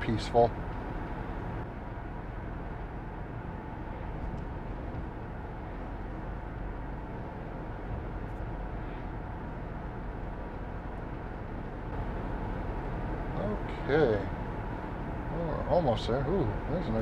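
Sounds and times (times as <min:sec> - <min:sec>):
vehicle cabin road rumble: 0:00.0 - 0:17.0.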